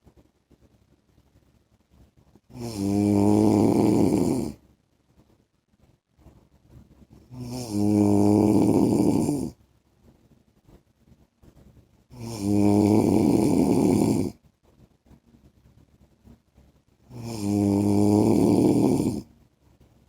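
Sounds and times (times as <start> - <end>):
man snoring: 2.5 - 4.6, 7.3 - 9.6, 12.1 - 14.4, 17.1 - 19.3.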